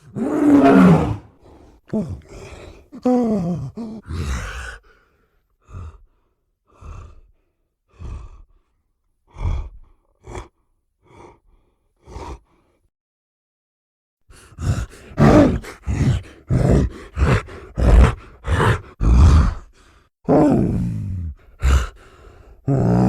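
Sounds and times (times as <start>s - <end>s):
creature falling groan: 0.2s - 1.2s.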